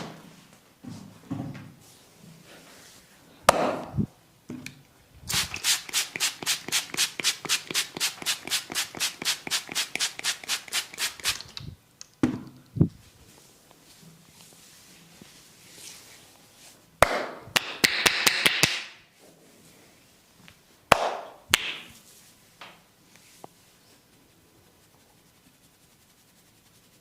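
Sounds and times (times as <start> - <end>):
hands slapping skin: 20.9 - 21.9.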